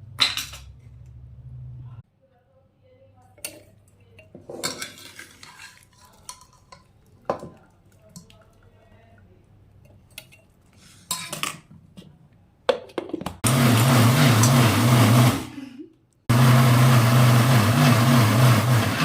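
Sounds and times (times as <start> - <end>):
utensils clinking against dishes: 3.4 - 6.9, 9.8 - 11.7.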